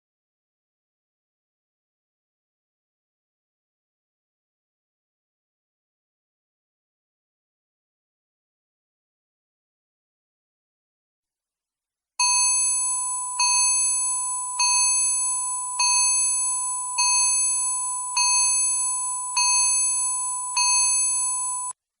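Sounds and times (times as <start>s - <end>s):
timer alarm chime: 12.2s - 21.8s.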